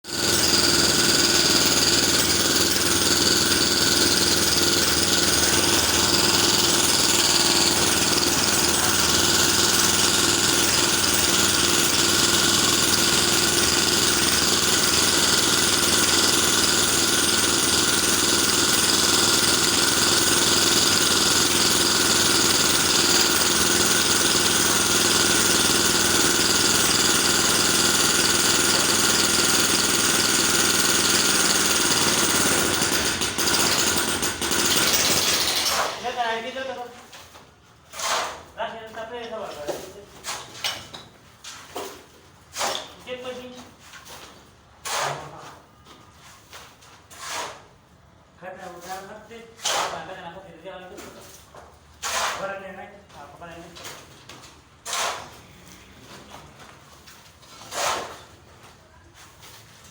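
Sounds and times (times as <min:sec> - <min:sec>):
electric jackhammer hammering: 0:00.1 - 0:36.5.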